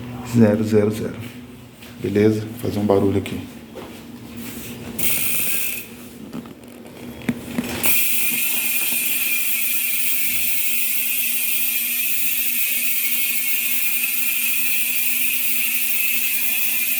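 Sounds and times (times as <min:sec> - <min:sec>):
high-pitched freehub buzz: 0:05.0 - 0:06.2, 0:07.8 - 0:16.9
bicycle freehub clicking: 0:05.0 - 0:16.9.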